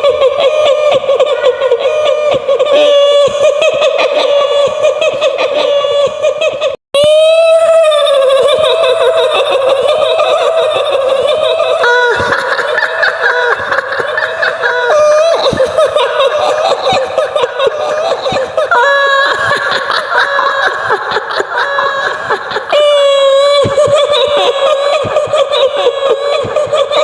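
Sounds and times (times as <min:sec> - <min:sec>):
woman cackling laughter: 0:08.0 - 0:27.0.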